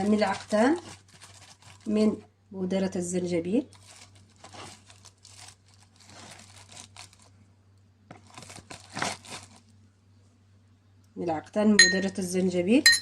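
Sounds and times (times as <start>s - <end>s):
packet crinkling: 0.0s - 2.1s, 3.4s - 7.4s, 8.1s - 9.8s
faint low hum: 0.0s - 13.0s.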